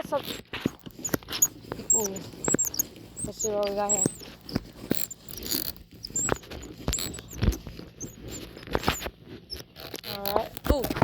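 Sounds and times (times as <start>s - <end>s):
high squeaks: 0.0s - 11.0s
fishing reel clicking: 1.8s - 7.4s.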